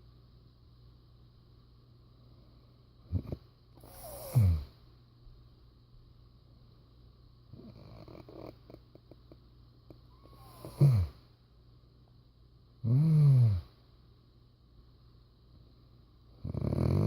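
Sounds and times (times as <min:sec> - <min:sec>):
man snoring: 0:03.2 - 0:04.7, 0:10.2 - 0:11.2, 0:12.8 - 0:13.7, 0:16.4 - 0:17.0.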